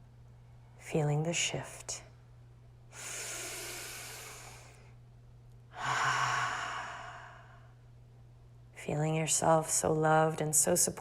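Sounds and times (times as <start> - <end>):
woman breathing deeply: 2.9 - 5.0, 5.7 - 7.8.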